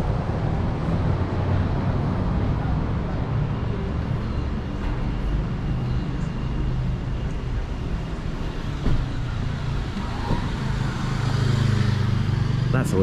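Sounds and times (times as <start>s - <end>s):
street traffic rumble: 0.0s - 13.0s.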